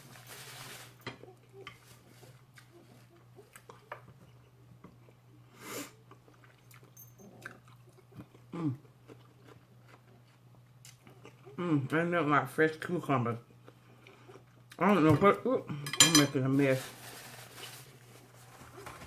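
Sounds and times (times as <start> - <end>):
person chewing food: 1.2 - 11.6, 13.5 - 14.8.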